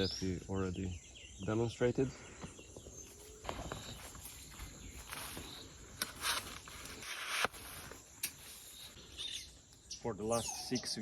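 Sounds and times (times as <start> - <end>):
footsteps through plants: 2.5 - 9.0.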